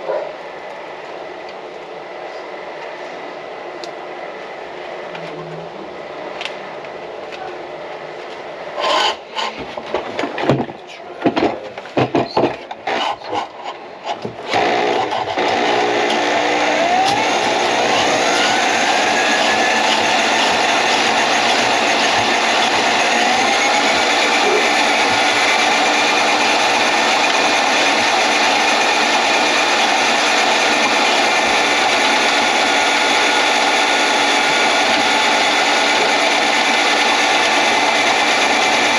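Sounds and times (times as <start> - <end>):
equipment knocking and clattering: 9.6 - 12.8
drain-cleaning machine running: 14.4 - 38.9.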